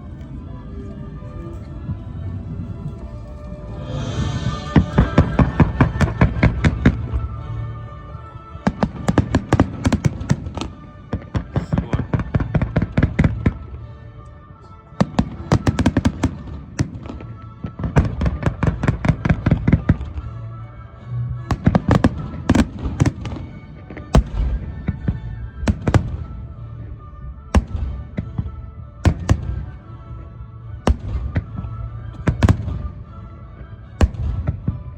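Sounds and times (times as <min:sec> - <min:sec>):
music: 0:00.0 - 0:34.9
fireworks bangs and crackles: 0:04.0 - 0:07.3, 0:08.7 - 0:13.6, 0:15.0 - 0:20.2, 0:21.5 - 0:26.6, 0:27.4 - 0:29.8, 0:30.9 - 0:33.0, 0:34.0 - 0:34.9.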